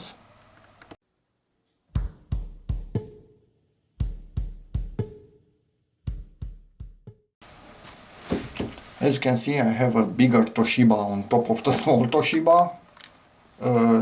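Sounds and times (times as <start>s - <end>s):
bass drum and snare hits: 2.0s - 3.2s.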